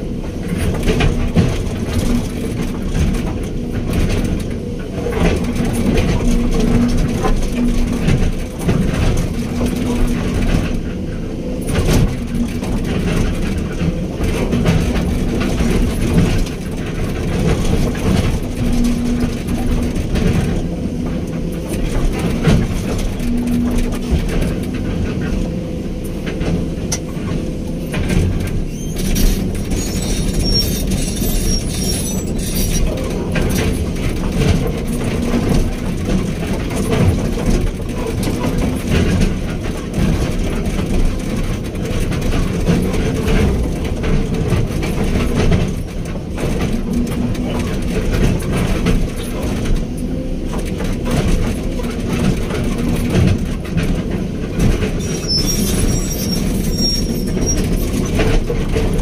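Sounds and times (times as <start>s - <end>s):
excavator diesel engine running: 0.0s - 59.0s
faint high squeal: 55.0s - 57.6s.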